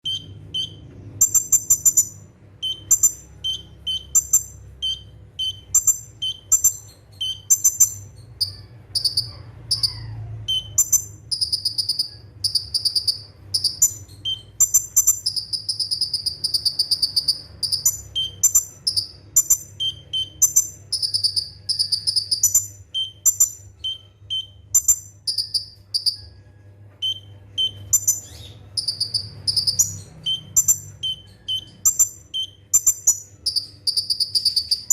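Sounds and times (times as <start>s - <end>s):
bird chirps and trills: 0.0s - 26.4s, 27.0s - 34.9s.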